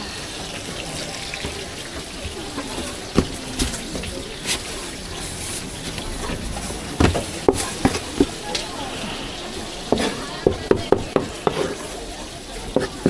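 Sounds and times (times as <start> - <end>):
faint voices: 0.0 - 13.0
steady hiss: 7.7 - 13.0.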